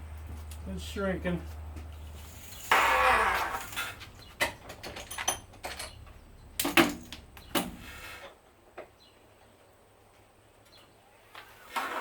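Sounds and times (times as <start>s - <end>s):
braided sheath scraping on hose: 2.1s - 4.2s
metallic clinks and knocks: 4.3s - 7.7s.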